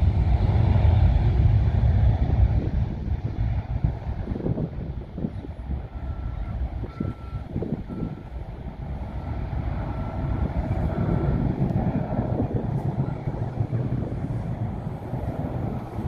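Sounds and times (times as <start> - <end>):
engine noise: 0.0 - 16.0
wind rumble: 0.0 - 16.0
vehicle reversing alarm beeping: 5.8 - 14.4.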